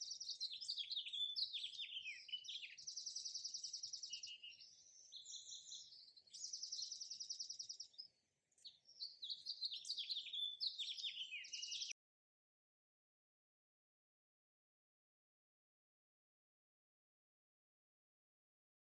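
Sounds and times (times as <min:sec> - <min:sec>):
bird trill: 0:00.0 - 0:12.0
songbirds chirping: 0:00.0 - 0:12.0.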